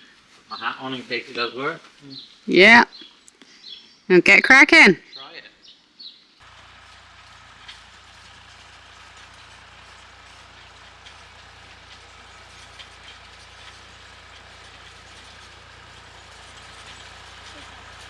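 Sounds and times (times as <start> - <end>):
distant tractor engine humming: 6.5 - 18.0.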